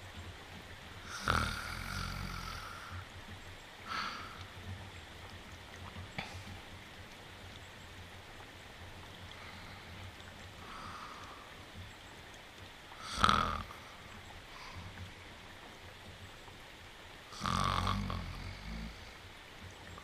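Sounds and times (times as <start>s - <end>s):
steady rain: 0.0s - 20.0s
soft breath: 3.8s - 4.5s, 9.2s - 11.8s
faint tick: 10.0s - 12.7s.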